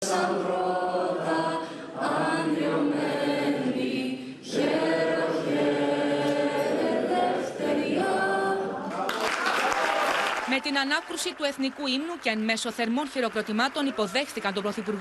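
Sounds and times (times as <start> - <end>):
group singing anthem: 0.0 - 9.1
short breath: 1.6 - 1.9.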